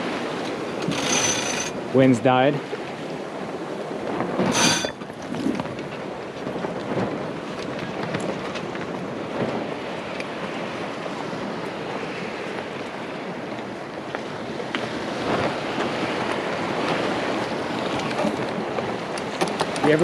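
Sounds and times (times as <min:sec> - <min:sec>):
water splashing along boat hull: 0:00.0 - 0:20.0
wind noise on microphone: 0:03.1 - 0:11.6, 0:14.2 - 0:20.0.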